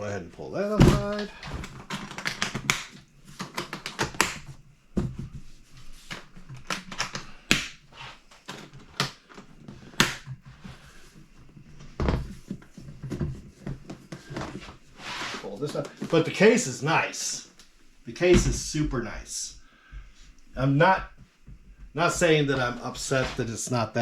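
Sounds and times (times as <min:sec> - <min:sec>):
hands clicking and tapping items: 0:00.7 - 0:14.8.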